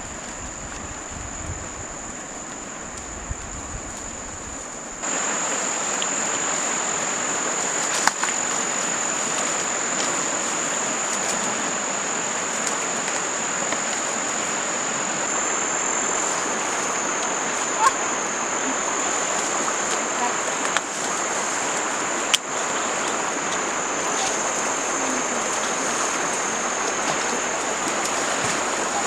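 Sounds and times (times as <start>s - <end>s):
insects trilling: 0.0s - 29.0s
steady hiss: 0.0s - 29.0s.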